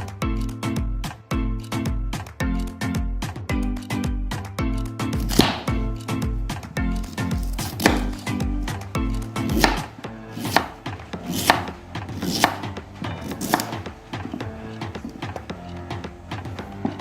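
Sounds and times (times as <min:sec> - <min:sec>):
background music: 0:00.0 - 0:17.0
knife chopping on cutting board: 0:05.2 - 0:06.0, 0:07.1 - 0:15.5.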